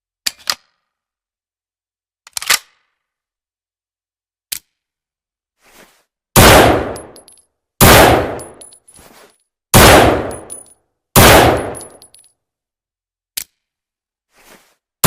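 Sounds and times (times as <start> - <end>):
submachine gun firing bursts: 11.2 - 11.8.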